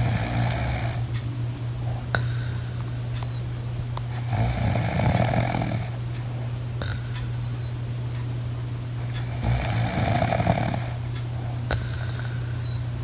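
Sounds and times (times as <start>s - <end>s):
woman snoring: 0.0s - 1.1s, 4.0s - 6.0s, 9.0s - 11.1s, 11.7s - 12.5s
steady low hum: 0.0s - 13.0s.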